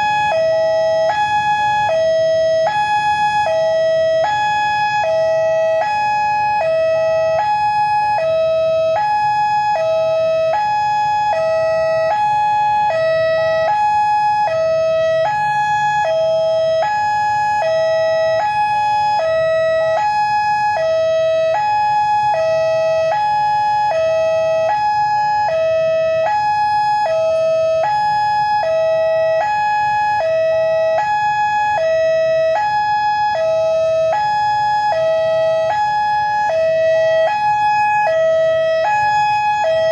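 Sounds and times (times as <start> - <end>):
crossing siren two-tone: 0.0 - 39.9.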